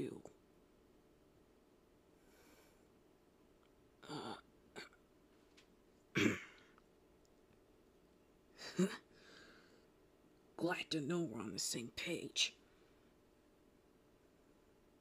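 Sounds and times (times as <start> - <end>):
person's throat and breath sounds: 4.0 - 5.0, 6.1 - 6.8.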